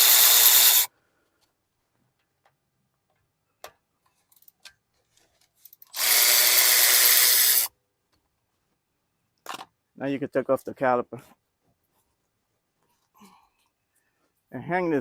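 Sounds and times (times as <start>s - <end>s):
power tool spinning out bolt: 0.0s - 0.9s, 5.9s - 7.7s.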